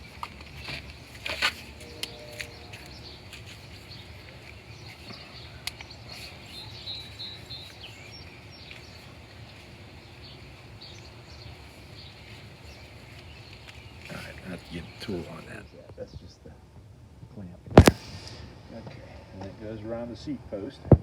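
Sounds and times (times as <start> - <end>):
high bird chirps: 0.0 - 15.7
steady low rumble: 0.0 - 21.0.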